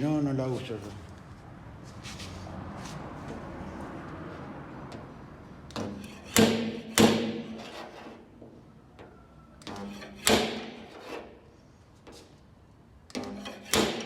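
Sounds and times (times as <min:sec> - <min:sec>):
dent puller knocking on sheet metal: 0:05.7 - 0:07.6, 0:09.7 - 0:11.0, 0:13.2 - 0:14.0.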